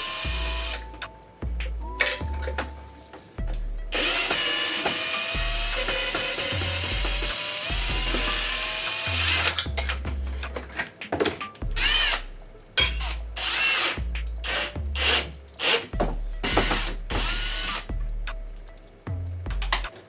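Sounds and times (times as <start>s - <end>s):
power tool running in bursts: 0.0s - 0.8s, 4.0s - 9.6s, 13.4s - 17.8s
background music with bass line: 0.0s - 20.0s.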